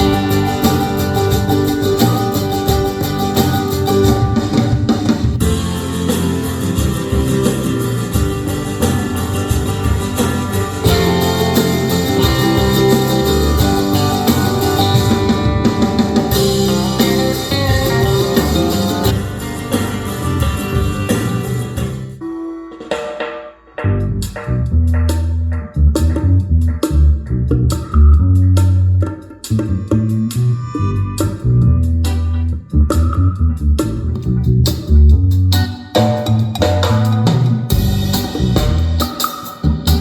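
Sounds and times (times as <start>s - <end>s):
guitar and drums music on car speaker: 0.0s - 25.4s, 33.8s - 40.0s.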